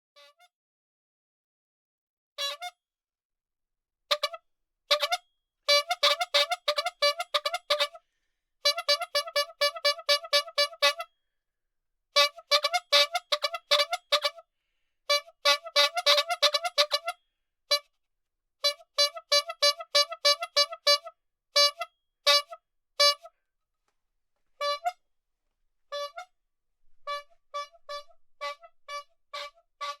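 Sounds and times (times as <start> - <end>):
rubber bulb horn honking: 2.4 - 2.8, 4.1 - 8.0, 8.7 - 11.1, 12.2 - 14.4, 15.1 - 17.8, 19.0 - 23.3, 24.6 - 25.0, 25.9 - 26.3, 27.1 - 30.0.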